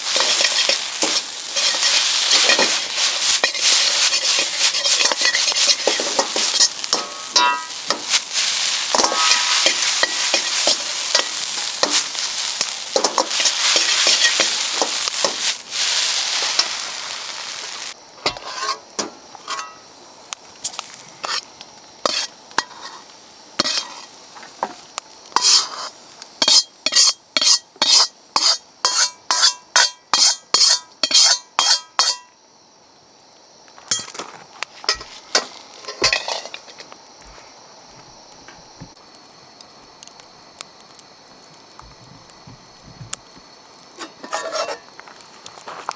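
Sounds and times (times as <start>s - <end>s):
metal ladle scraping a wok: 0.0s - 18.8s, 22.0s - 23.0s, 23.6s - 24.1s, 25.4s - 32.2s, 35.9s - 36.6s, 44.0s - 44.8s
rice sizzling in a wok: 0.0s - 45.9s.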